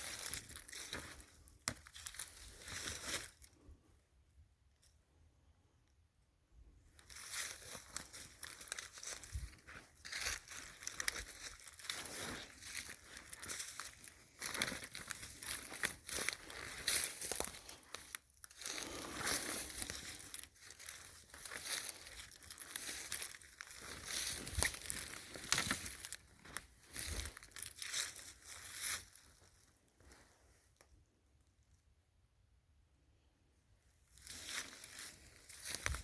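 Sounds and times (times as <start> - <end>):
footsteps crunching on frozen ground: 0.0 - 3.6, 7.0 - 30.3, 34.1 - 36.0.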